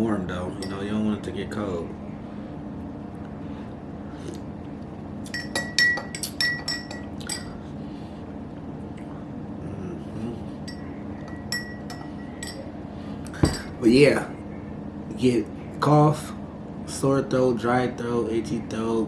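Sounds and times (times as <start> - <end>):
metal spoon clinking against cup: 5.3 - 7.6, 10.7 - 12.7.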